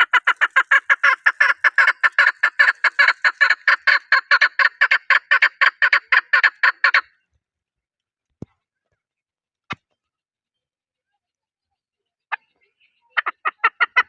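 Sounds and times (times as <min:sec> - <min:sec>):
partridge clucking: 0:00.0 - 0:05.5.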